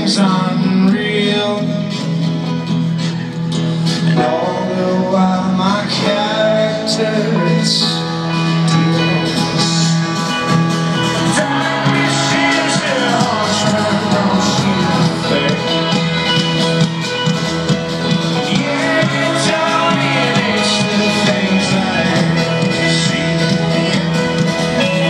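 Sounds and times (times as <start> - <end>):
folk-rock band playing: 0.0 - 25.0.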